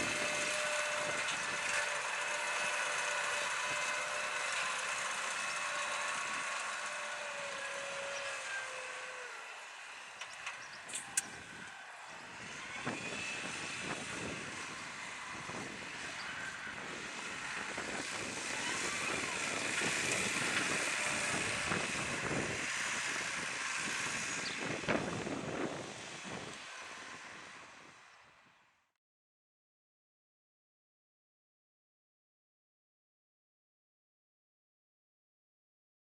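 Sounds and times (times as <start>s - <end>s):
tractor diesel engine running: 0.0s - 28.5s.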